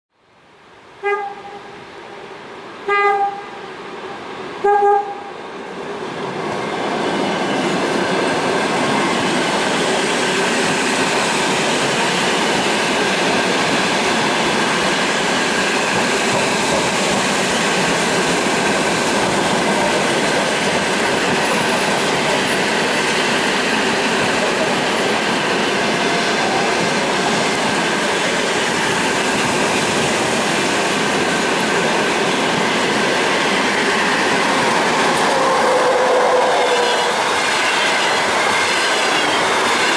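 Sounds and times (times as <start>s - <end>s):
train passing at speed: 1.0s - 39.9s
wheels clickety-clack on rail: 6.0s - 39.9s.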